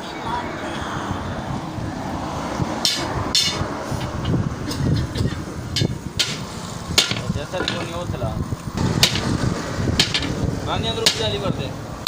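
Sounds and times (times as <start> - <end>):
steady low rumble: 1.0 - 12.0
hand tools knocking and clinking: 2.8 - 8.0, 8.8 - 9.3, 10.0 - 10.4, 11.0 - 11.4.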